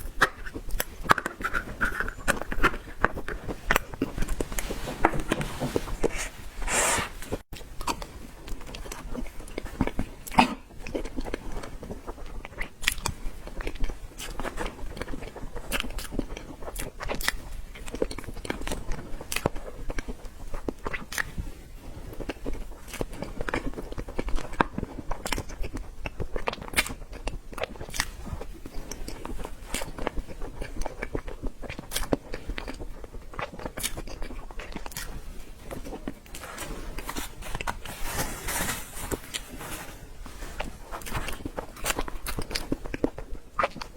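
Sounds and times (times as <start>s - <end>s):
person chewing and biting: 0.0s - 21.3s, 22.2s - 38.4s, 39.1s - 43.9s
rustling hiss: 4.2s - 7.5s.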